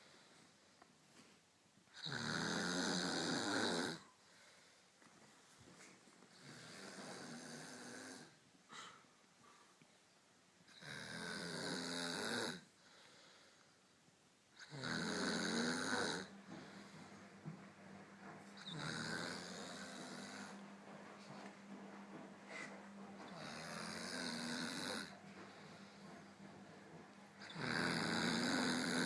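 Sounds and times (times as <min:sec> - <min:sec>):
quiet breathing: 0:00.0 - 0:02.0, 0:03.4 - 0:11.6, 0:12.5 - 0:29.0
woman snoring: 0:02.0 - 0:04.1, 0:06.4 - 0:08.4, 0:10.7 - 0:12.7, 0:14.6 - 0:16.9, 0:18.6 - 0:20.6, 0:23.3 - 0:25.2, 0:27.4 - 0:29.0.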